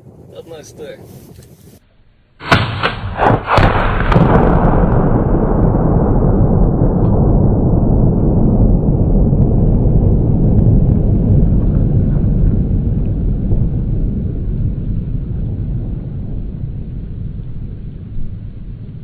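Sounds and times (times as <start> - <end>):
rifle shots: 2.4 - 5.2
explosion with deep rumble: 2.4 - 19.0.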